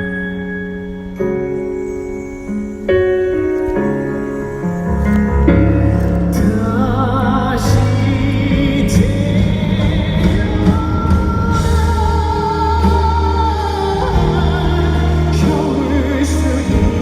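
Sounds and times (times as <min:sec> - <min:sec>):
instrumental accompaniment with bass: 0:00.0 - 0:17.0
person singing: 0:03.4 - 0:17.0.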